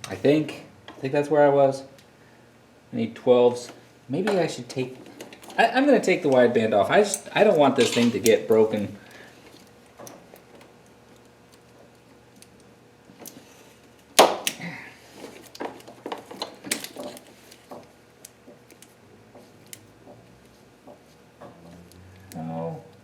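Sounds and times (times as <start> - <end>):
hand tools clinking on metal: 7.0 - 8.9.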